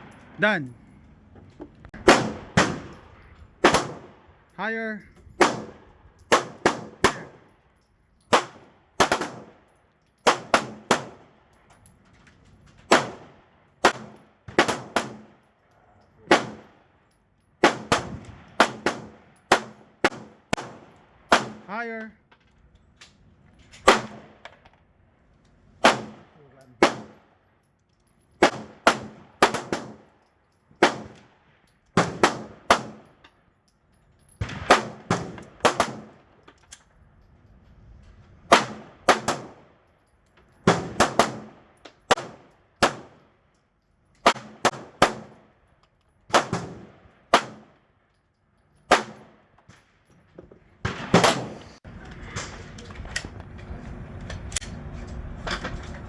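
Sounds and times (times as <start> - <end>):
handgun shots echoing: 5.4 - 7.5, 46.3 - 47.8, 50.8 - 51.7.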